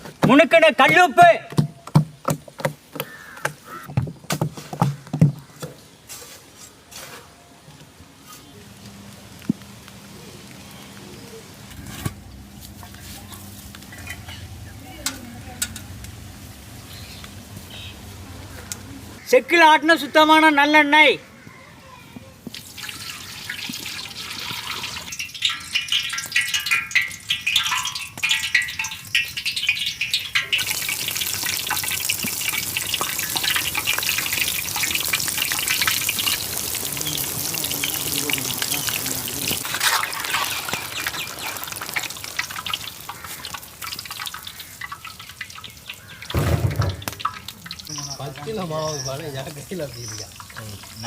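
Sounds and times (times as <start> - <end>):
oil pouring trickle: 22.5 - 51.0.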